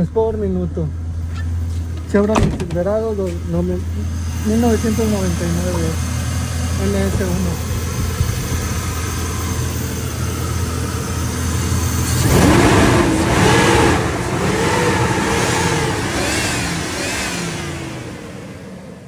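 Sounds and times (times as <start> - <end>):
truck engine idling and revving: 0.0 - 19.0.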